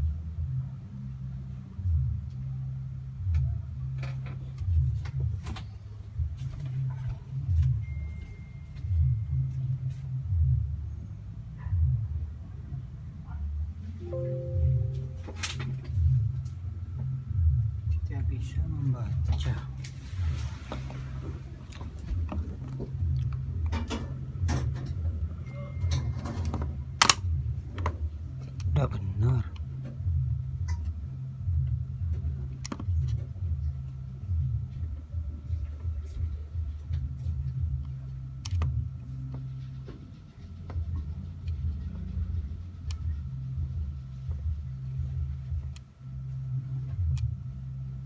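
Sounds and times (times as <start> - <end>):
low engine rumble: 0.0 - 48.0
steady low hum: 0.0 - 48.0
small clicks and handling noises: 25.9 - 28.8, 32.5 - 33.3
sharp click: 27.0 - 27.3.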